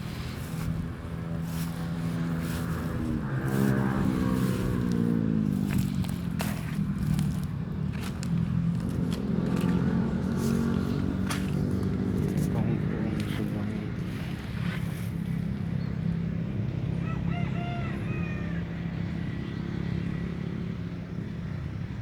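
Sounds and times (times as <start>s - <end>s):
small engine running: 0.0s - 17.0s.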